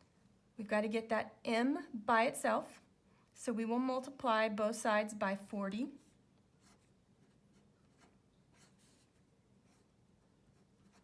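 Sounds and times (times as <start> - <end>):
pencil scratching on paper: 6.0 - 11.0.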